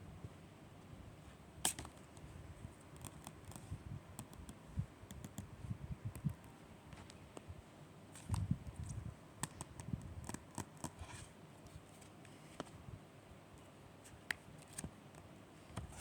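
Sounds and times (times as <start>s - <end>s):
small clicks and taps: 2.9s - 5.5s, 6.1s - 7.5s, 8.2s - 11.8s.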